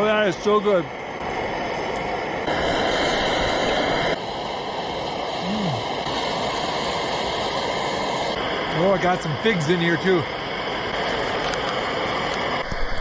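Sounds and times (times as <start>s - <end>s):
stove burner hissing: 0.0s - 13.0s
person humming: 5.4s - 5.9s.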